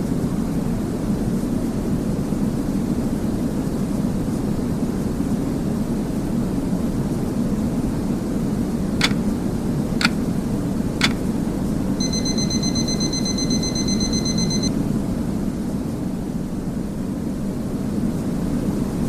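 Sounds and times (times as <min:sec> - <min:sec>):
electronic timer beep: 0:12.0 - 0:14.7.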